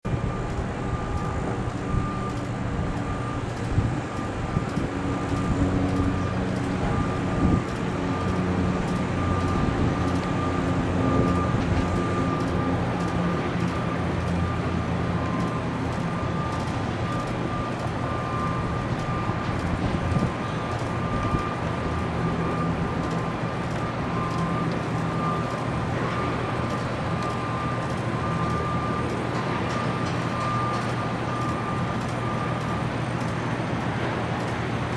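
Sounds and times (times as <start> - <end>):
heavy diesel engine running: 0.0 - 34.9
steady high whine: 0.0 - 34.9
faint ticks: 0.5 - 6.7.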